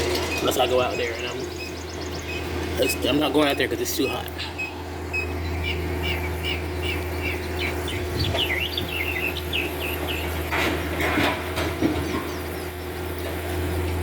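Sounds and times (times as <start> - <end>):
excavator engine drone: 0.0 - 14.0
small bird chirping: 1.2 - 10.5.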